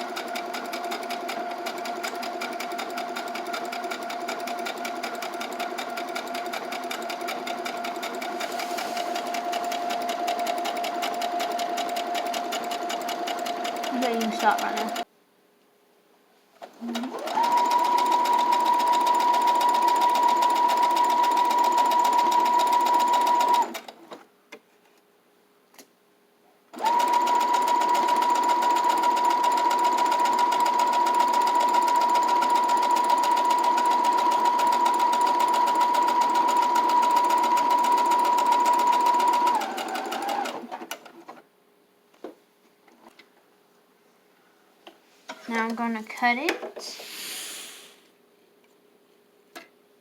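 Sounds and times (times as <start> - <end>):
sewing machine stitching: 0.0 - 15.1, 16.6 - 24.2, 26.8 - 41.4.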